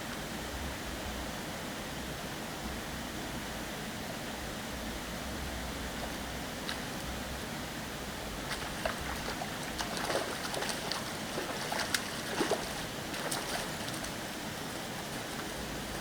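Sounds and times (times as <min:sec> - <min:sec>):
rushing water: 0:06.6 - 0:16.0
fish splashing water: 0:08.4 - 0:16.0.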